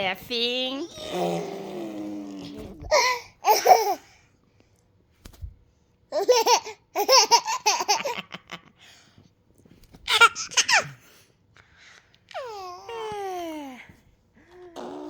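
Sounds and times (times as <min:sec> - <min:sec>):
baby giggling: 0:02.8 - 0:04.0, 0:06.1 - 0:08.6, 0:10.1 - 0:11.0.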